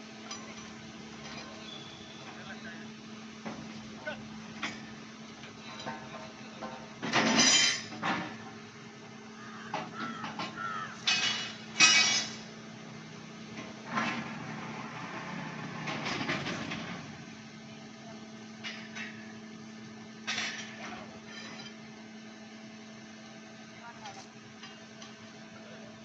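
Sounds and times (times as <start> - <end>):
metal clanks and scraping: 0.2 - 2.4, 4.5 - 8.5, 9.8 - 12.5, 13.6 - 14.6, 15.7 - 17.1, 18.6 - 19.3, 20.2 - 21.8.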